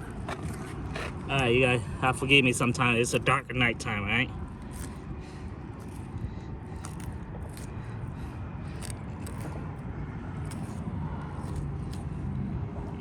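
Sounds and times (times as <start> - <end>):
steady low rumble: 0.0 - 13.0
knife scraping and slicing fish: 4.5 - 9.8.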